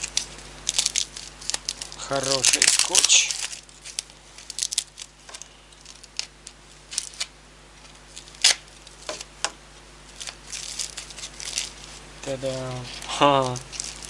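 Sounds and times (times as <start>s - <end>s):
tape and plastic packaging crackling: 0.0s - 14.0s.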